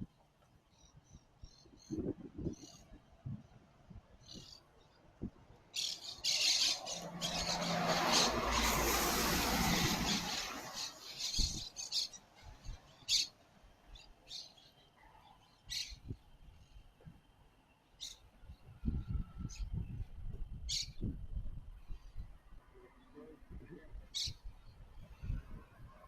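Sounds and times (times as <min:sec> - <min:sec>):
small birds chirping: 0:00.0 - 0:09.0, 0:09.7 - 0:21.2, 0:21.8 - 0:25.4
loud rushing noise: 0:06.8 - 0:11.0.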